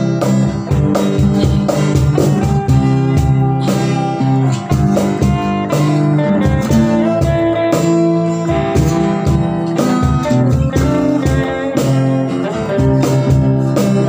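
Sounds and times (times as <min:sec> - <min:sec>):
pop song with guitar and beat: 0:00.0 - 0:14.0.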